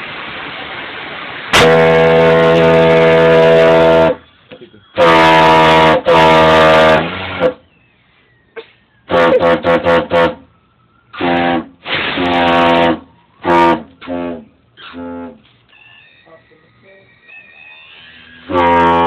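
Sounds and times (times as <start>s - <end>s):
train horn blowing: 1.5s - 4.2s, 5.0s - 7.6s, 9.1s - 10.5s, 11.2s - 15.4s, 18.4s - 19.0s.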